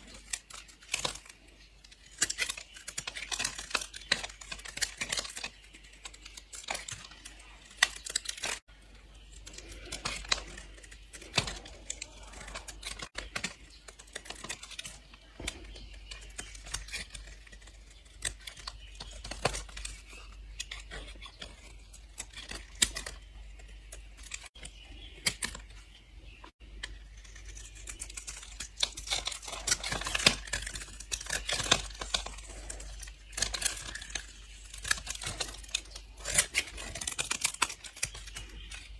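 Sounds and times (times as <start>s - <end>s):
blade slicing through dry soap: 27.2s - 38.9s.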